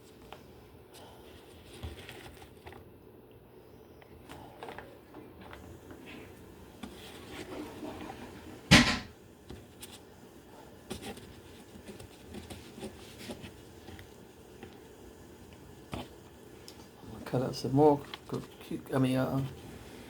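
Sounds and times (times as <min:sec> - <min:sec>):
loud clunk: 0:08.7 - 0:09.1.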